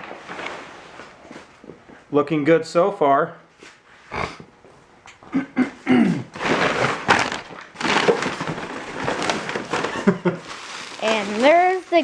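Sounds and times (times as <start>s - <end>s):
packing material rustling: 0.0s - 1.3s, 6.3s - 12.0s.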